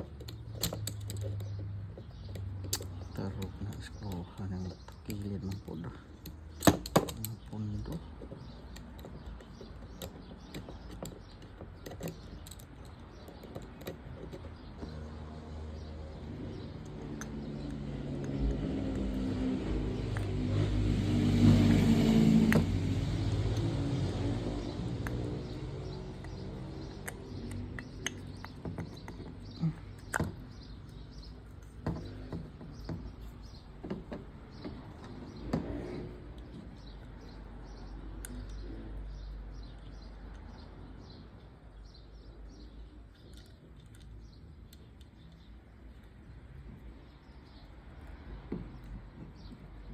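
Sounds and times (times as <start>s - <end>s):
vehicle passing by: 15.0s - 28.3s.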